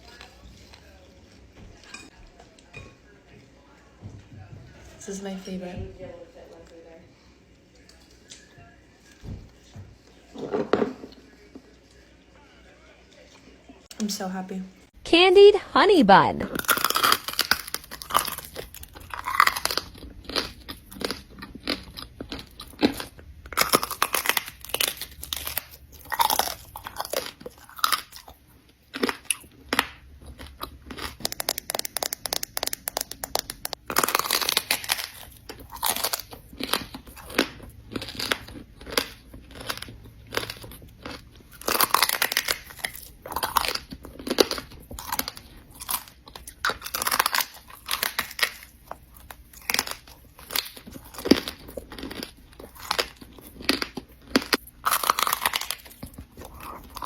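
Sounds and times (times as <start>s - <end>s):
chewing crunchy food: 0.0s - 2.7s, 16.5s - 57.0s.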